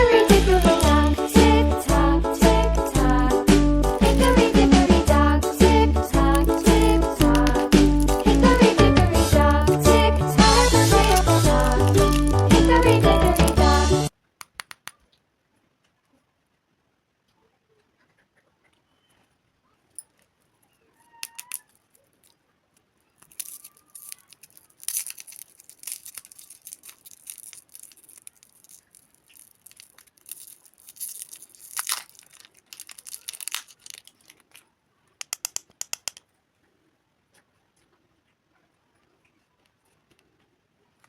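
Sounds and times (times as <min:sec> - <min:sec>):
candy packaging crinkling: 0:00.0 - 0:14.1, 0:21.2 - 0:36.2.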